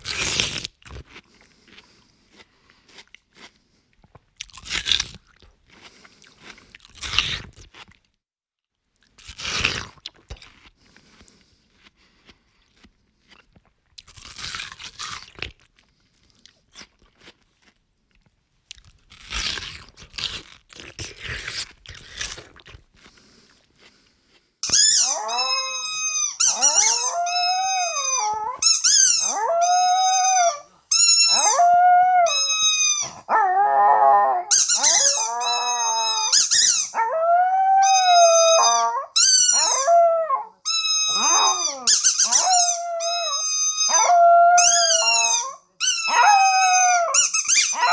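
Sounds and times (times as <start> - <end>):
dog crunching food: 0.0 - 8.1, 9.0 - 37.0, 37.8 - 47.9
dog howling: 24.7 - 47.9.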